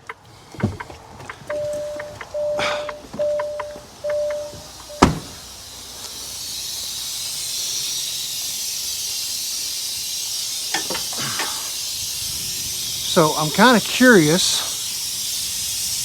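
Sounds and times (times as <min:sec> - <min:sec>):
air hissing from truck: 0:00.0 - 0:16.0
truck warning chime beeping: 0:01.4 - 0:06.8.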